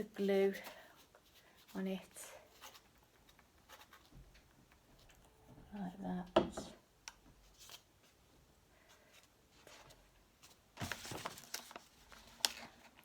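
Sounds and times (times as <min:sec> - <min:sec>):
knocking on plastic bottle: 0:06.4 - 0:06.7
cardboard rustling: 0:09.0 - 0:13.0.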